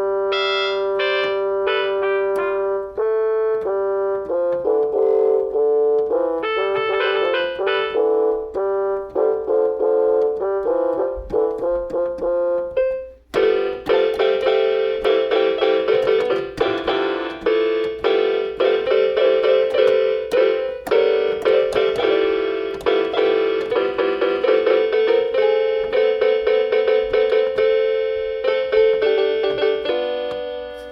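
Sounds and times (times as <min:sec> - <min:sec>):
keyboard playing piano tune: 0:00.0 - 0:30.9.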